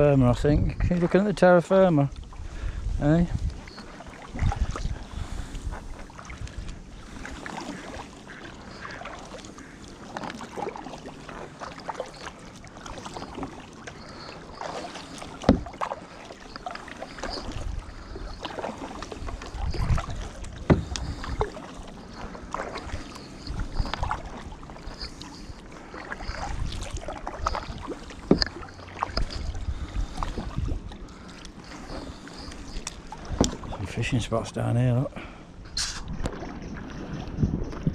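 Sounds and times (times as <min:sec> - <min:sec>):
paddle strokes in water: 0:00.0 - 0:37.9.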